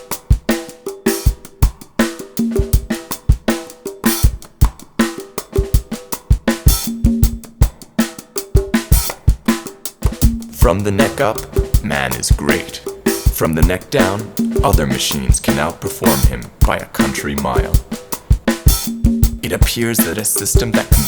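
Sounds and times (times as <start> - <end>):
drum-kit beat: 0.0 - 21.0
repeating low notes: 10.5 - 18.2.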